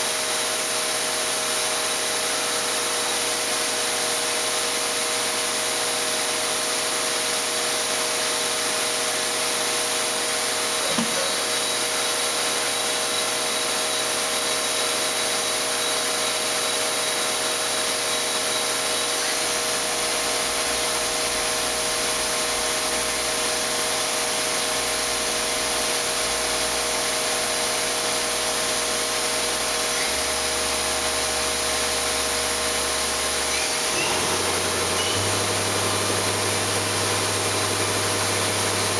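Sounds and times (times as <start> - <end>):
machining center running: 32.9 - 38.9.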